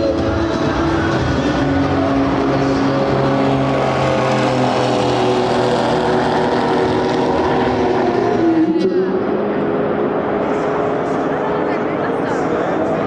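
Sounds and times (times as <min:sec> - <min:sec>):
race car engines running: 0:00.0 - 0:13.0.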